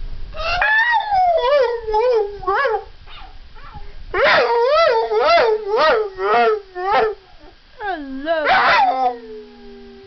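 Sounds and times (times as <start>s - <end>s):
dog howling: 0.4s - 2.9s, 3.6s - 7.5s, 8.4s - 10.0s.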